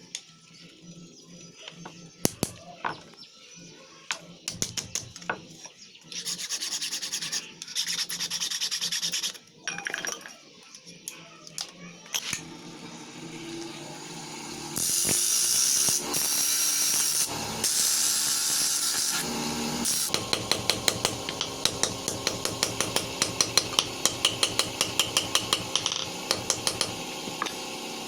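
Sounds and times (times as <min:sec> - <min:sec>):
rasping strokes on metal: 0:06.1 - 0:09.4, 0:14.5 - 0:27.6.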